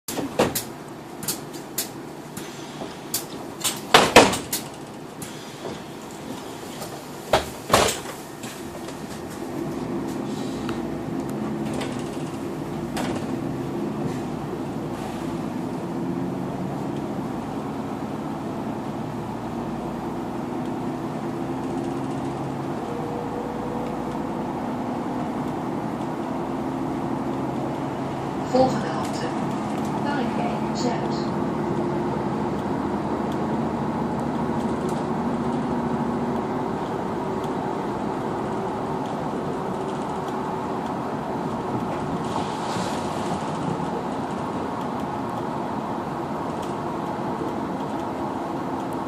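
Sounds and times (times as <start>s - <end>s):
bus engine humming: 0.0s - 49.0s
knocks and clunks in vehicle: 0.1s - 15.8s.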